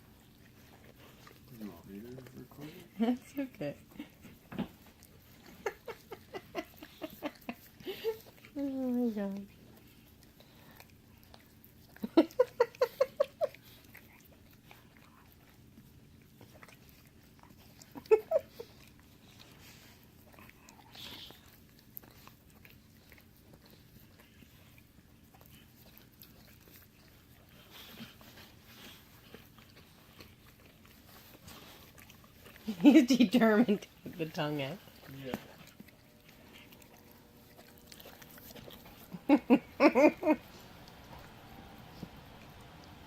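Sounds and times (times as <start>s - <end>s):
dogs licking wet smacks: 0.0s - 43.0s.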